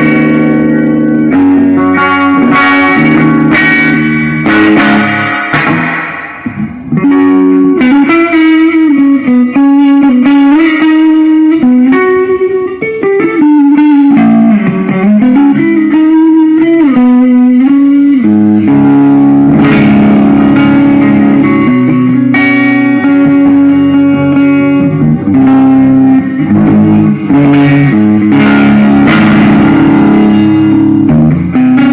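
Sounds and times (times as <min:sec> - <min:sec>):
band playing: 0:00.0 - 0:07.4
bass guitar: 0:00.0 - 0:31.9
electric guitar lead line: 0:00.0 - 0:31.9.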